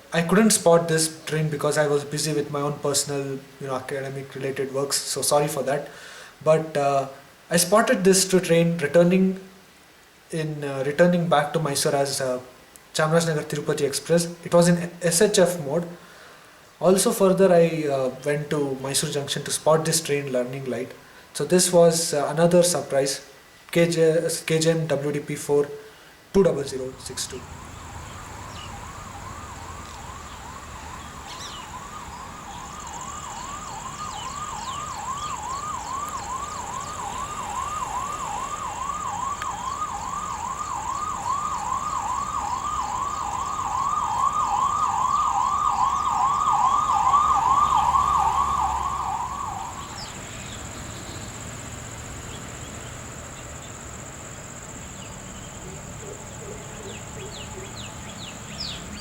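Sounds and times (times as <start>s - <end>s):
steady high whine: 26.4s - 52.3s
electronic siren yelping: 26.8s - 50.7s.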